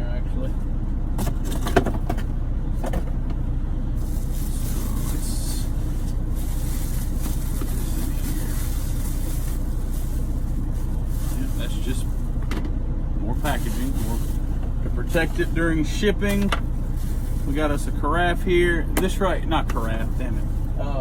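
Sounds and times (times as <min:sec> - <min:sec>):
truck engine idling: 0:00.0 - 0:21.0.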